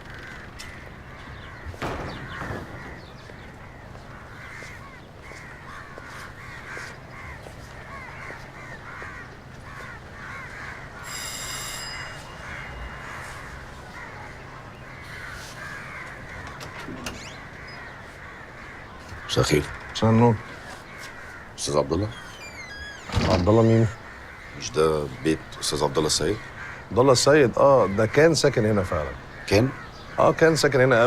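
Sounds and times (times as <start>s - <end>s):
steady low hum: 0.0s - 19.2s
birds calling: 0.0s - 31.0s
high bell-like ringing: 11.0s - 13.7s.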